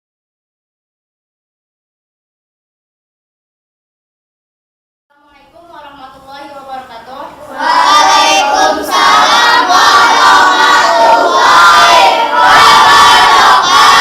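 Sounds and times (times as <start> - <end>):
children shouting in unison: 7.5 - 14.0.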